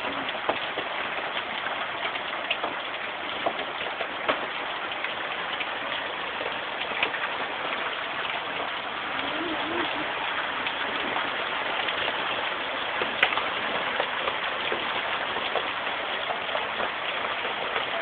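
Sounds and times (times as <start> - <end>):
heavy rain pouring: 0.0 - 18.0
hailstones knocking on surfaces: 2.6 - 4.6, 10.4 - 18.0.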